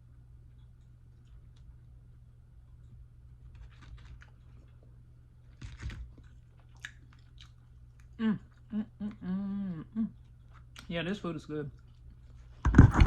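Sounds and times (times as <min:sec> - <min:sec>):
person chewing and eating: 0:02.6 - 0:10.9, 0:11.7 - 0:13.0
person humming mmm: 0:08.2 - 0:10.3.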